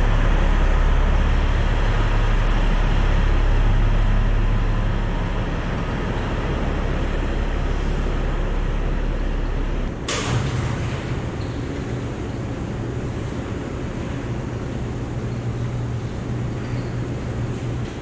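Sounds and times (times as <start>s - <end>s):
truck diesel engine rumbling: 0.0s - 10.1s.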